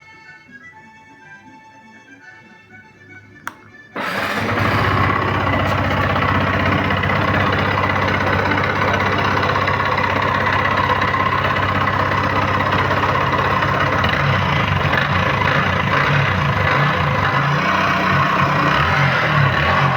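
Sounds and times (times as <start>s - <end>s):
motorcycle engine starting and idling: 4.0s - 19.9s.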